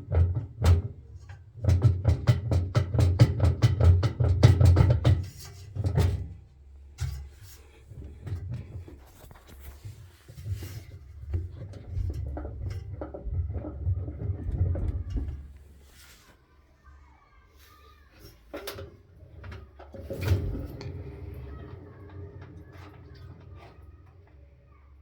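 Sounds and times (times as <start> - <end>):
washing machine drum rumbling: 0.0 - 15.8, 18.6 - 24.9
knocks and clunks: 7.0 - 15.9.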